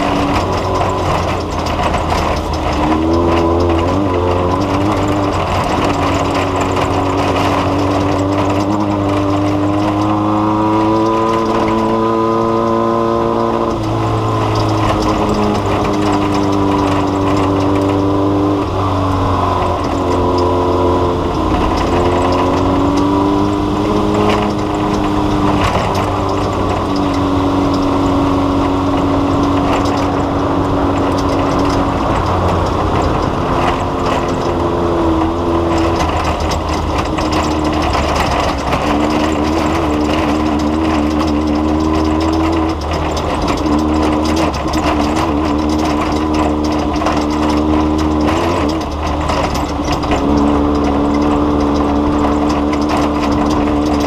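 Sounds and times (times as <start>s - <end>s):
engine running: 0.0s - 54.0s.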